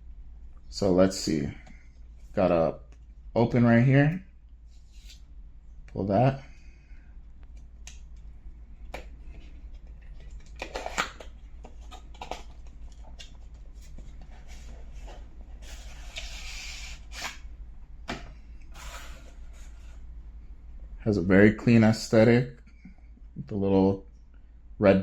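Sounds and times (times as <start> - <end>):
cardboard and paper packaging rustling: 9.2 - 17.4, 18.7 - 20.0
scraping sound: 18.7 - 20.0.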